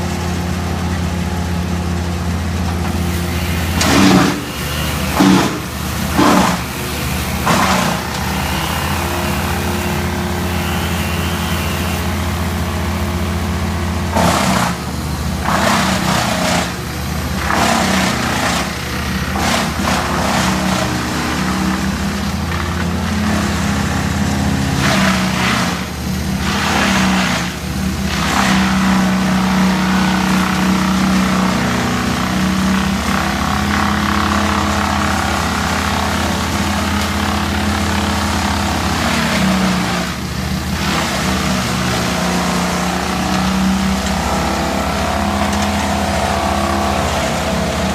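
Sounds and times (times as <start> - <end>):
wood chipper engine running: 0.0 - 47.9
branches crunching in chipper: 3.6 - 14.6.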